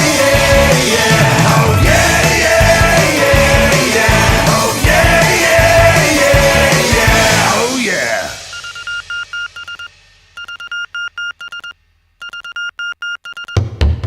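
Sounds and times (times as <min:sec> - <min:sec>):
upbeat rock music: 0:00.0 - 0:09.8.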